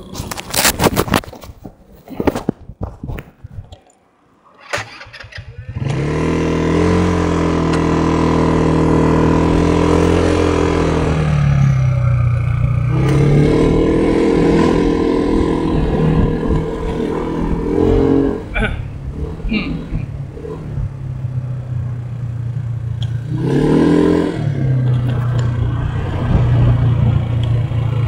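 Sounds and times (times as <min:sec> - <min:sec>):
vehicle engine accelerating: 0:04.7 - 0:28.0.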